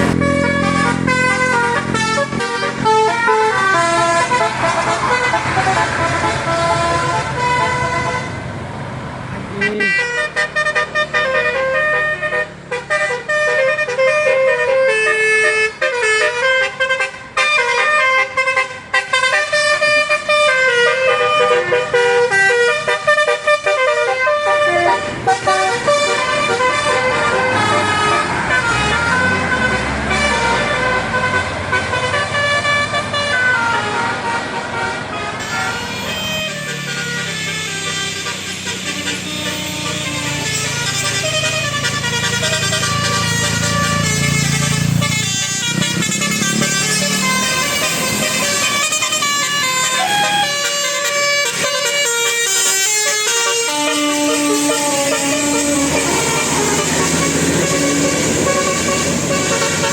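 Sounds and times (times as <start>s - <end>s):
vehicle engine running: 0.0s - 8.2s, 35.3s - 51.8s, 53.2s - 59.9s
musical air horn tune: 0.0s - 8.4s, 9.6s - 59.9s.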